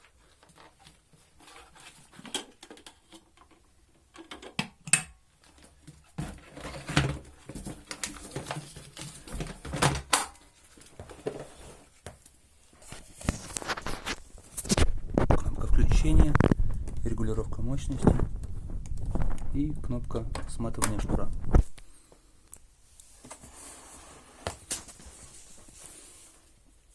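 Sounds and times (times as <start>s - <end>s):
plastic clicks and knocks: 2.2s - 8.5s.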